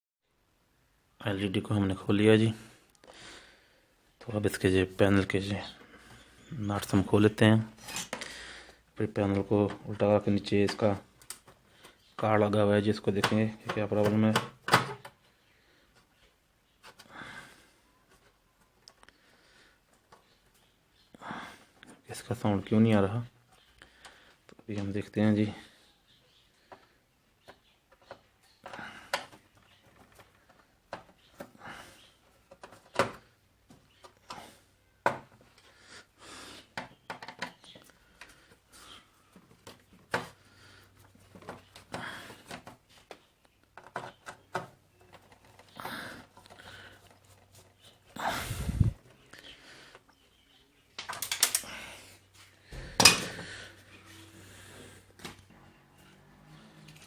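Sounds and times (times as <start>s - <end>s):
small metal nuts clicking: 51.0s - 51.7s.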